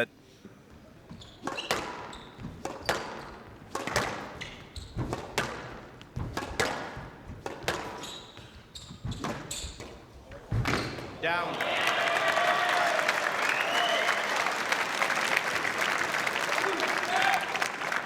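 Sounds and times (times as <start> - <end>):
squash ball hits echoing: 1.1 - 11.2.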